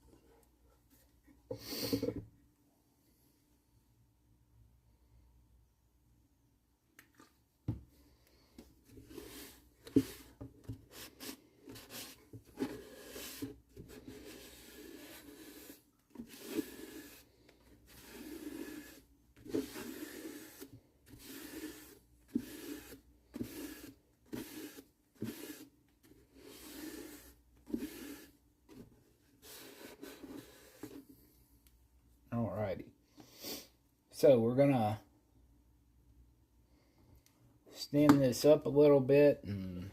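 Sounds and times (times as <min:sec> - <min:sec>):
wiping strokes on wood: 0:09.0 - 0:25.7, 0:26.4 - 0:28.3.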